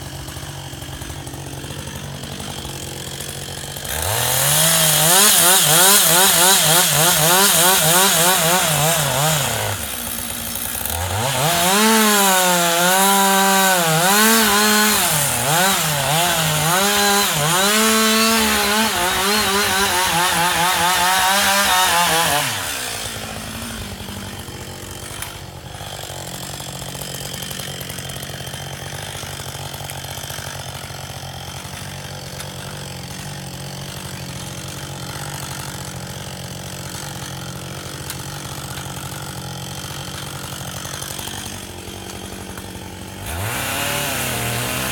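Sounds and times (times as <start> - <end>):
chainsaw cutting wood: 0.0 - 44.9
chainsaw idling: 0.0 - 44.9.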